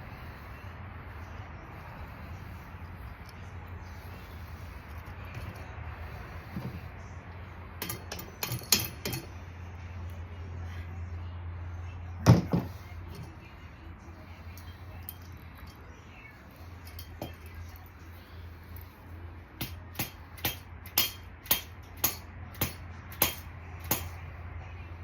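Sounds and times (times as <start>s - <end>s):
metal tool clank: 7.8s - 9.4s, 16.8s - 17.8s
sharp metallic taps: 19.6s - 24.2s.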